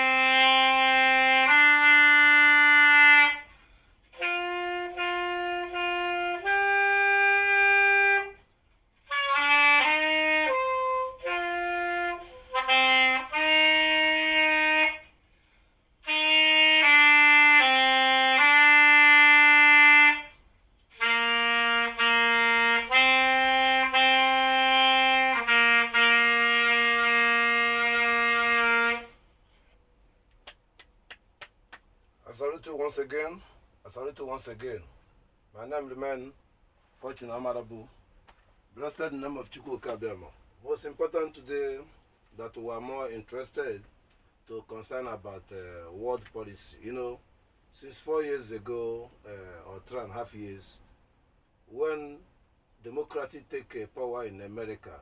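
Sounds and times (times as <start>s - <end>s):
solo instrumental melody: 4.1s - 15.1s, 16.0s - 29.2s.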